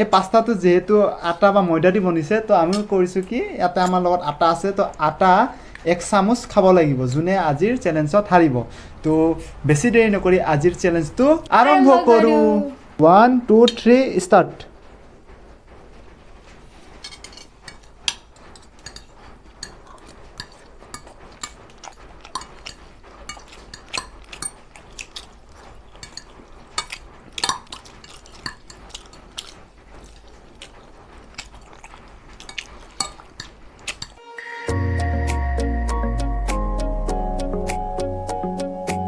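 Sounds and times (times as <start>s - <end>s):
cutlery clinking on plates: 17.0s - 25.2s, 25.9s - 29.6s, 32.4s - 34.2s
chewing: 17.7s - 34.2s.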